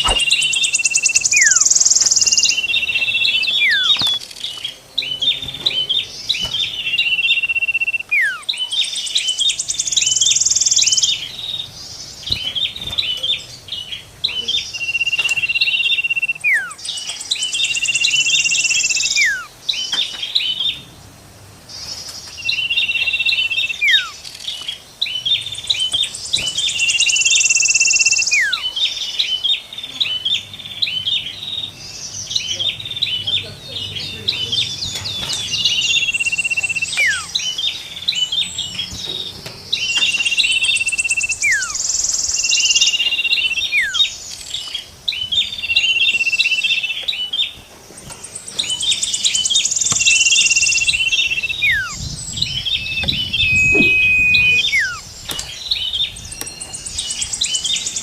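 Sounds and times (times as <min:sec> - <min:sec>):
steep falling bird whistle: 0:00.0 - 0:02.7, 0:03.3 - 0:04.2, 0:06.9 - 0:08.6, 0:14.8 - 0:16.8, 0:17.8 - 0:19.5, 0:23.6 - 0:24.2, 0:26.4 - 0:28.7, 0:36.1 - 0:37.4, 0:39.9 - 0:44.1, 0:49.4 - 0:55.4
long level bird whistles: 0:00.0 - 0:04.3, 0:06.4 - 0:11.2, 0:14.8 - 0:19.5, 0:22.4 - 0:24.2, 0:26.6 - 0:29.4, 0:35.6 - 0:37.7, 0:39.8 - 0:44.2, 0:49.0 - 0:58.0
quick bird chirps: 0:00.0 - 0:04.6, 0:35.1 - 0:37.7, 0:48.7 - 0:55.6
high buzzy bird trill: 0:00.0 - 0:12.9, 0:13.5 - 0:19.5, 0:22.7 - 0:24.5, 0:25.4 - 0:29.3, 0:35.6 - 0:37.9, 0:39.8 - 0:44.5, 0:48.9 - 0:55.3.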